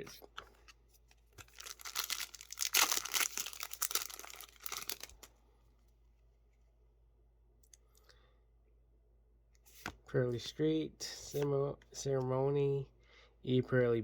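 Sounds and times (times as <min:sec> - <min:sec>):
foil wrapper crackling: 0:01.4 - 0:05.3.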